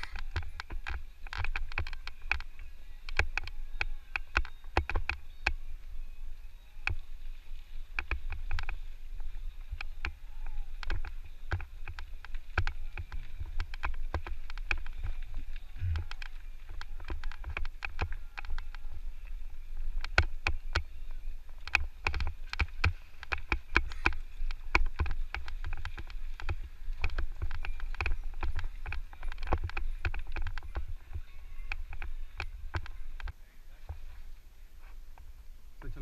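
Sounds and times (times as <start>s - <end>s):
bike knocking and rattling: 0.0s - 34.2s
low microphone rumble: 15.0s - 17.4s.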